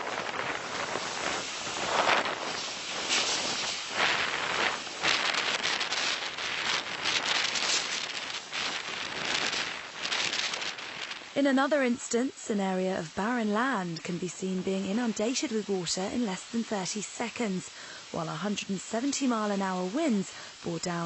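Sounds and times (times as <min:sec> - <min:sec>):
heavy rain: 0:00.0 - 0:21.0
wind gusts: 0:00.0 - 0:21.0.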